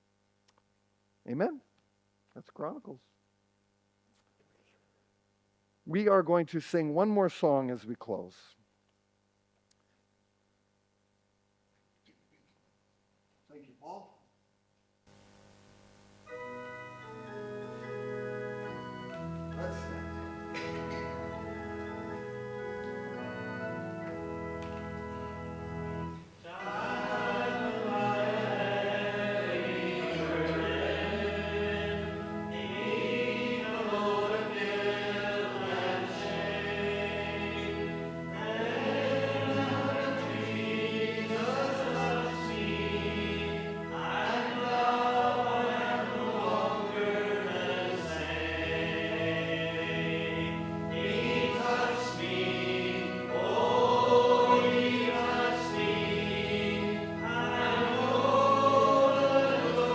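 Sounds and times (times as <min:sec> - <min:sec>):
congregation singing a hymn: 0:16.3 - 0:59.9
sustained instrumental accompaniment: 0:16.3 - 0:59.9.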